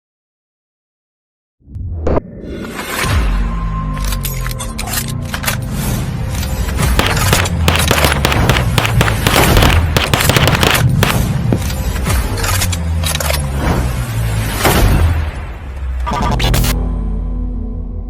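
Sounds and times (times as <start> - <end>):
rapid gunshots: 6.9 - 11.6
music with heavy bass: 16.0 - 16.8.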